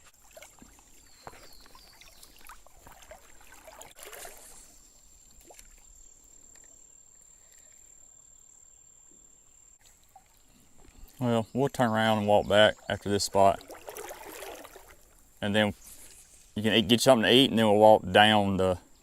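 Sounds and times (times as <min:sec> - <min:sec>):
water trickling and splashing: 0:00.0 - 0:07.9, 0:09.8 - 0:16.7
rustles: 0:14.1 - 0:16.6.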